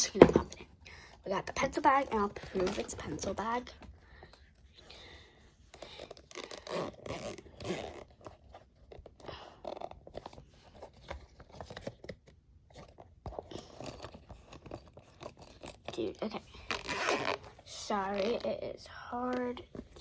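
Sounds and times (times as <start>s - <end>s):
zipper pulled open and shut: 5.9s - 12.1s, 12.8s - 18.6s.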